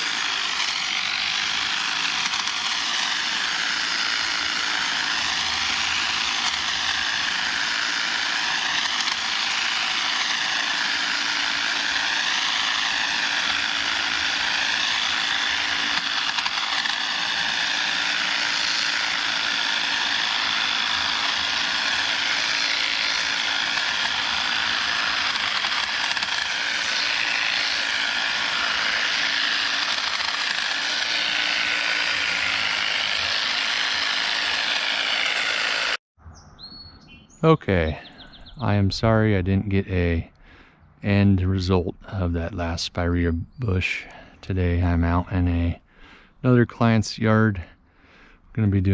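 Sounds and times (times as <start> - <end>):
hedge trimmer cutting branches: 0.0 - 36.0.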